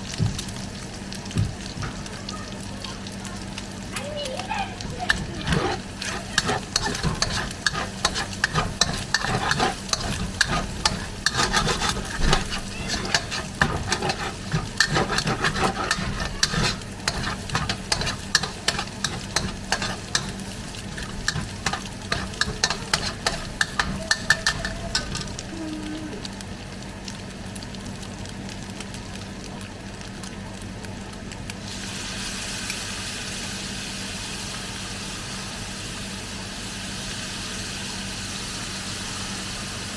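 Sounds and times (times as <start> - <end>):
garlic sizzling in oil: 0.0 - 39.9
spatula scraping in a pan: 4.8 - 25.6.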